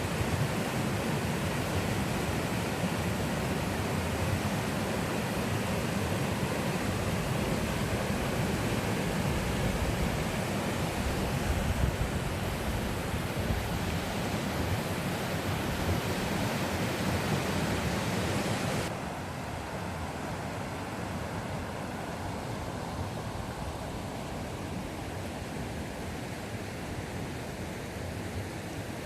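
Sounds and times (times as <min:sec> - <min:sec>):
running water: 0:00.0 - 0:18.9.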